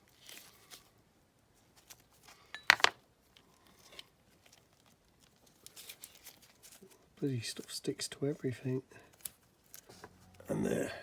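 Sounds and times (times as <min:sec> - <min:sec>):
tape peeling and crumpling: 0:00.0 - 0:01.0, 0:01.6 - 0:02.4, 0:03.2 - 0:07.2, 0:09.0 - 0:10.4.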